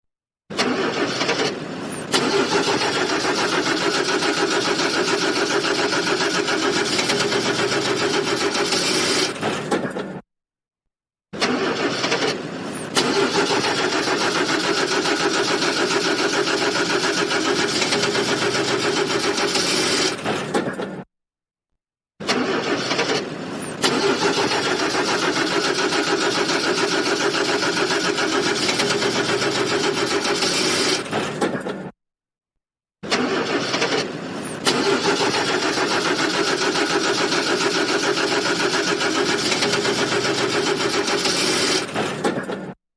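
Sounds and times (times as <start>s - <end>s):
car starter motor cranking: 0.5s - 10.2s, 11.4s - 21.0s, 22.2s - 31.8s, 33.1s - 42.7s.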